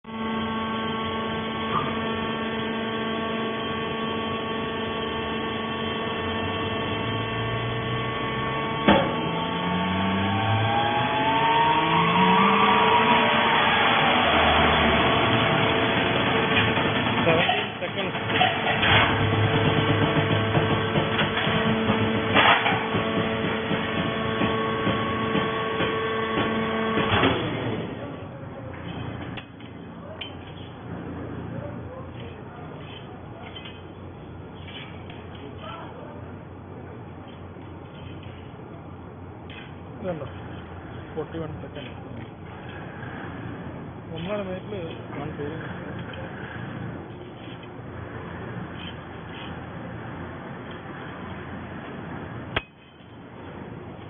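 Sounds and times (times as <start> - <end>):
motor and hydraulic pump humming: 0.1 - 54.0
loud metal clanks: 13.7 - 27.6.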